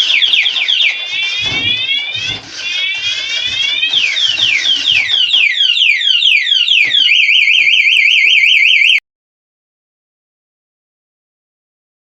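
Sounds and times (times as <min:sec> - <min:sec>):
alarm siren cycling tones: 0:00.0 - 0:09.0.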